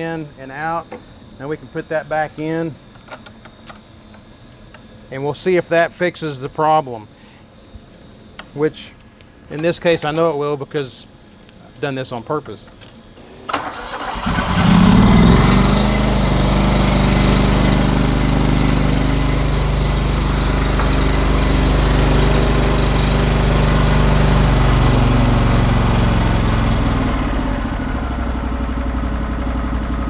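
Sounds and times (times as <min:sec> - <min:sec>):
twin-cylinder engine running: 0:13.5 - 0:30.0.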